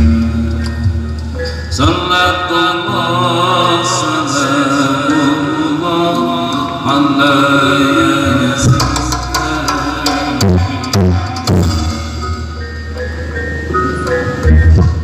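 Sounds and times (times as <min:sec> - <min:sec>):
loud music over sound system: 0:00.0 - 0:15.0
wavering chant-like vocal: 0:01.7 - 0:12.1.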